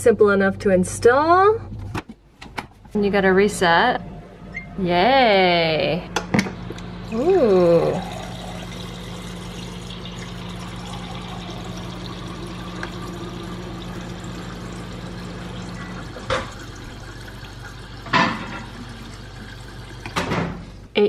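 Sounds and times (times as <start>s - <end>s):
refrigerator hum: 2.7s - 21.0s
water pouring into a glass: 7.0s - 20.2s.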